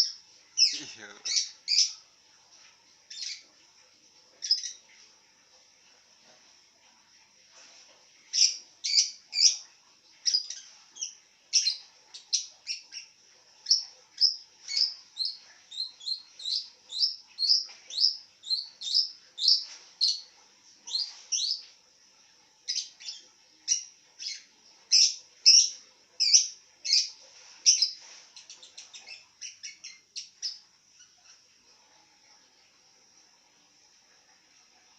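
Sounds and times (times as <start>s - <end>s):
lovebird chirping: 0.0s - 2.0s, 3.1s - 3.5s, 4.4s - 4.9s, 8.3s - 20.2s, 20.9s - 21.7s, 22.7s - 31.4s.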